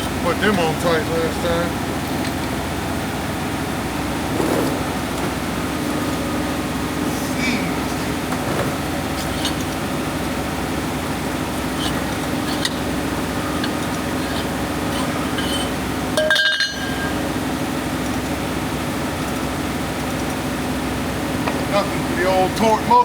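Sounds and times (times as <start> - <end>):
steady mechanical hum: 0.0 - 23.0
hand tools clinking on wheel nuts: 11.8 - 17.3.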